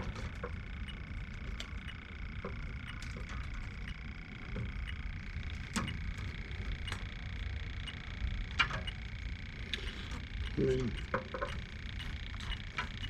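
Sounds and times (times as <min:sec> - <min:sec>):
leak detector high-pitched tone: 0:00.0 - 0:13.0.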